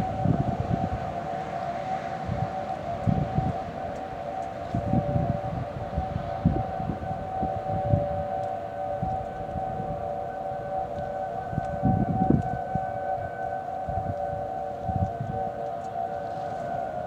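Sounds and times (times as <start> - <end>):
warning siren steady wail: 0.0 - 17.0.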